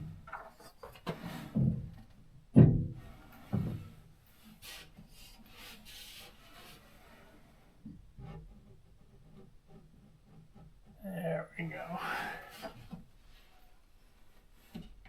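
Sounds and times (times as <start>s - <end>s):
wire shelf scraping on wall: 0.0s - 1.9s, 3.0s - 11.0s
knocks: 1.6s - 3.8s.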